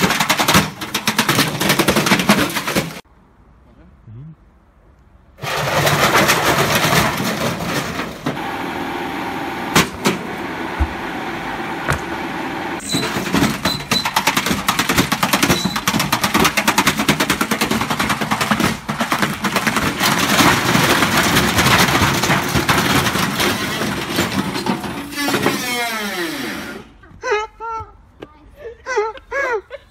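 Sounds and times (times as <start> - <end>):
washing machine banging and rattling: 0.0 - 3.0, 5.4 - 8.4, 9.7 - 12.2, 12.8 - 25.6
falling whine: 8.3 - 12.8.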